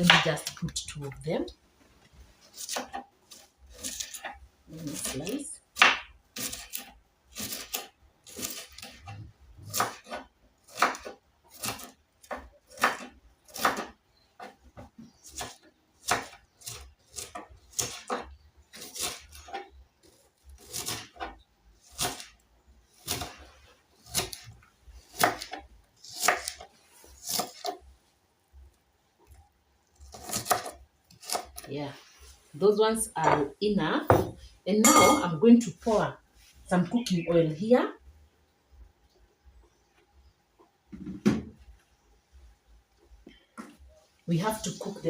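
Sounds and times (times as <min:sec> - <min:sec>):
knife chopping on a board: 0:05.8 - 0:14.6, 0:25.1 - 0:26.6.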